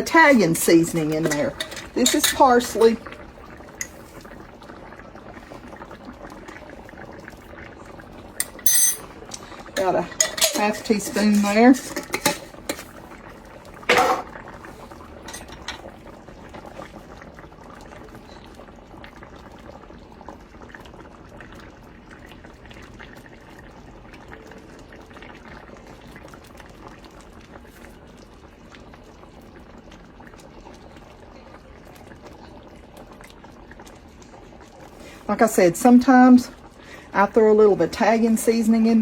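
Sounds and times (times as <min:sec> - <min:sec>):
gravy bubbling in a skillet: 0:00.0 - 0:39.0
sharp clink: 0:08.4 - 0:09.0.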